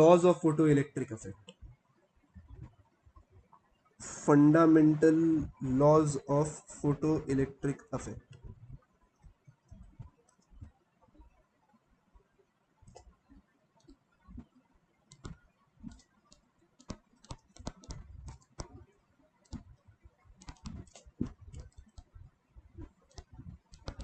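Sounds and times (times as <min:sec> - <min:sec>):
light clicks and taps of writing: 0:12.9 - 0:24.0.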